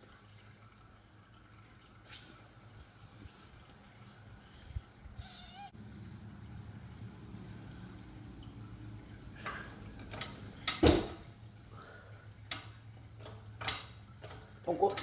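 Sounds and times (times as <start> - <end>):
low steady hum: 0.0 - 15.0
clicks and knocks: 12.5 - 15.0.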